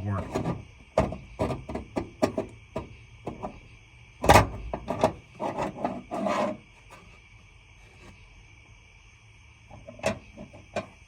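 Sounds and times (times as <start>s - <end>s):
short scraping rubs: 5.3s - 7.2s.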